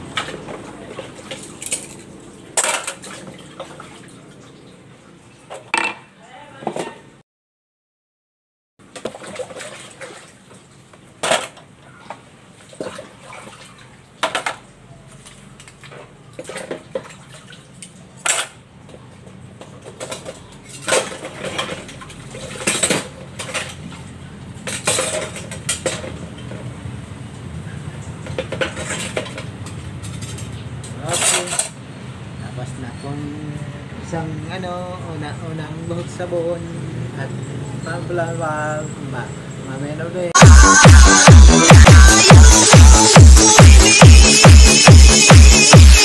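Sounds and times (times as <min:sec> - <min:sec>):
dishes and cutlery clinking: 0:05.5 - 0:06.1, 0:28.2 - 0:31.8.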